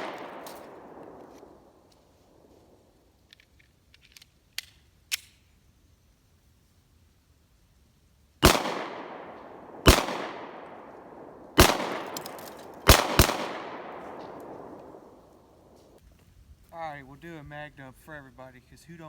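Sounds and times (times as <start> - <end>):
pistol shots echoing: 0.0 - 1.6, 8.4 - 15.3.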